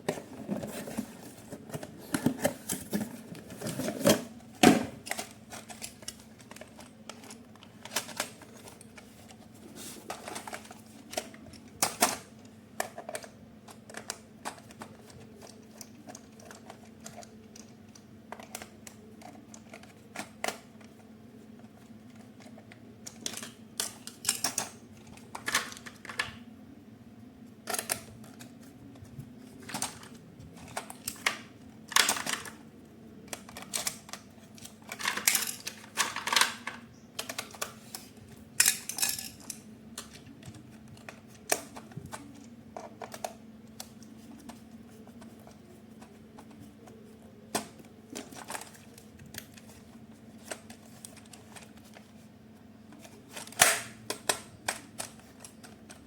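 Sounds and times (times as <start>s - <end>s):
faint steady hum: 0.0s - 56.0s
plastic toy parts clicking: 53.0s - 56.0s.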